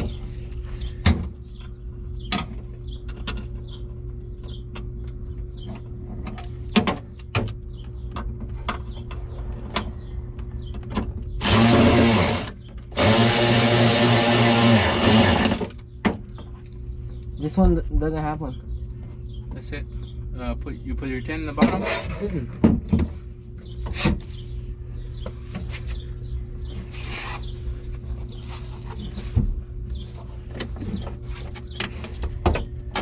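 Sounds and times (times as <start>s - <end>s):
power tool driving a fastener: 11.4s - 15.8s.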